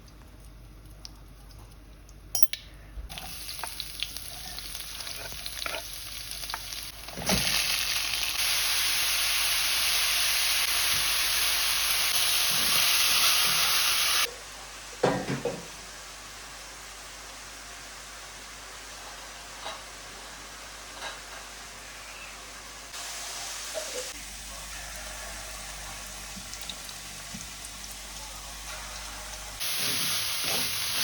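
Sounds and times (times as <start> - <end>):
food sizzling in hot oil: 3.1 - 14.3, 22.9 - 31.0.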